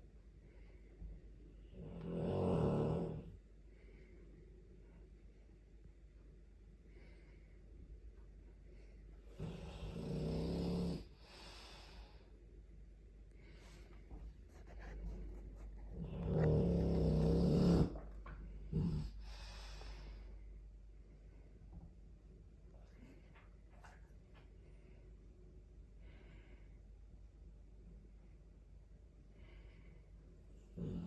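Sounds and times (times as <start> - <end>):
dog snoring: 1.7 - 3.4, 9.3 - 11.2, 15.8 - 18.0, 18.7 - 19.4, 30.7 - 31.0.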